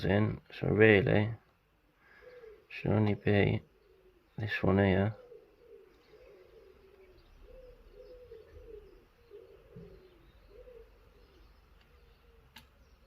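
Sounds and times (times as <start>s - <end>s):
pigeon cooing: 2.1s - 2.7s, 3.5s - 4.4s, 5.0s - 12.6s.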